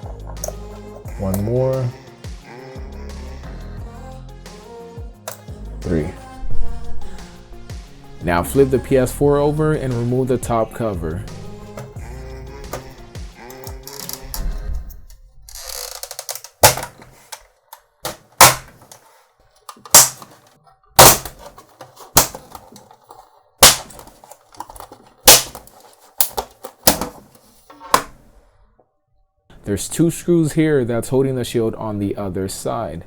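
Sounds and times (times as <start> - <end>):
plastic clips clicking and snapping: 0.4 - 0.6, 13.5 - 14.4, 15.5 - 19.0, 19.6 - 20.4, 21.0 - 23.0, 23.6 - 27.1.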